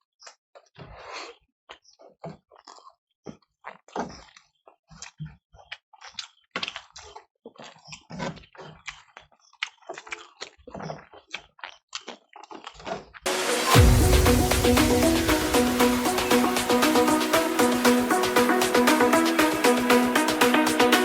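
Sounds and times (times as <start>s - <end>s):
wet chewing and lip-smacking: 4.2s - 13.0s
electronic dance music: 13.3s - 21.0s.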